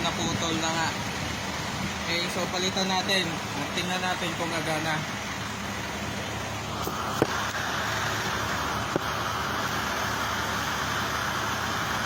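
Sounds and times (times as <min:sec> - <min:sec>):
electric pump motor whirring: 0:03.4 - 0:12.0.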